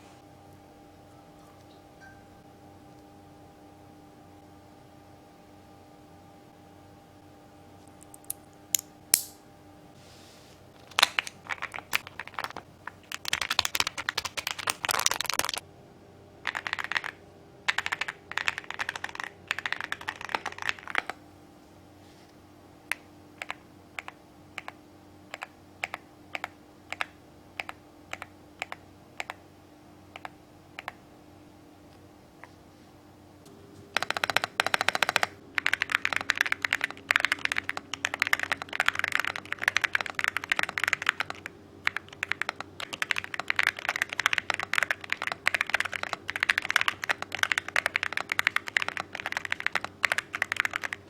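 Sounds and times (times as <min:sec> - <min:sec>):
mechanical keyboard typing: 0:10.8 - 0:15.6, 0:16.4 - 0:21.2, 0:22.9 - 0:29.4, 0:34.0 - 0:51.0.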